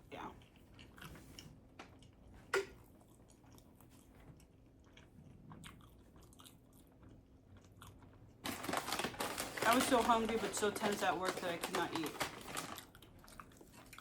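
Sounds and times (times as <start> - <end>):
person chewing a sandwich: 0.4 - 8.4, 12.6 - 14.0.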